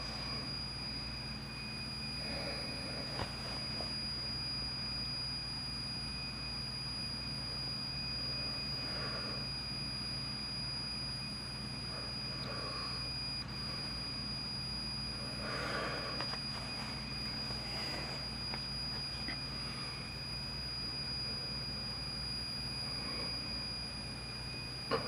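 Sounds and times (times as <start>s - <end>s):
cassette deck whine: 0.0s - 25.0s
low hum: 0.0s - 25.0s.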